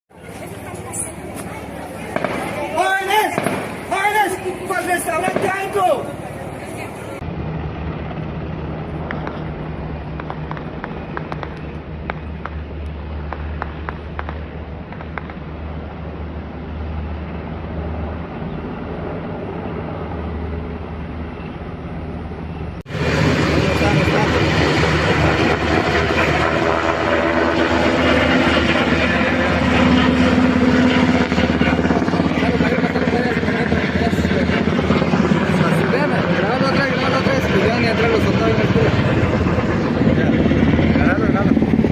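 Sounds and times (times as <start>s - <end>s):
helicopter droning: 0.1s - 41.9s
sharp cracks: 2.1s - 4.0s, 5.2s - 5.8s, 10.1s - 12.6s, 13.3s - 15.4s.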